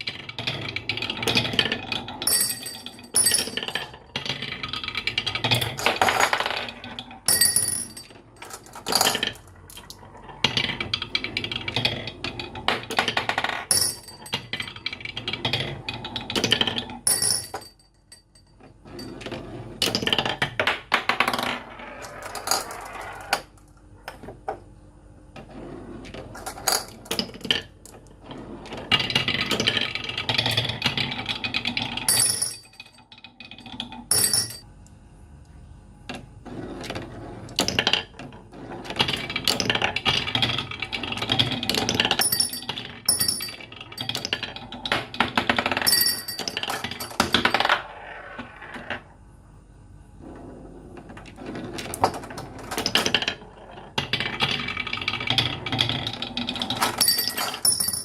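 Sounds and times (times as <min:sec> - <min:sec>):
marbles rolling and clattering: 0:00.0 - 0:17.7, 0:18.8 - 0:23.5, 0:36.8 - 0:49.1, 0:50.3 - 0:58.0.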